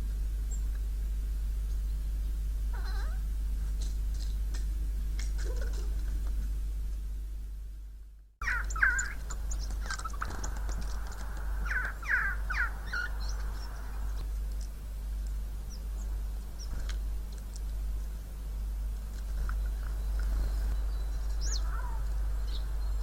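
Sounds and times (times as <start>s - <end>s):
steady low hum: 0.0s - 23.0s
bird harsh falling calls: 2.7s - 3.3s, 8.4s - 14.3s, 19.4s - 23.0s.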